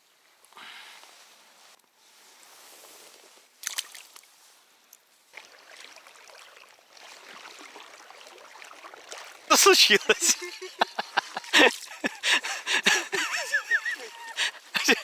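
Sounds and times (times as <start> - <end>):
river water sloshing: 5.4 - 15.0
sharp splash: 5.4 - 15.0.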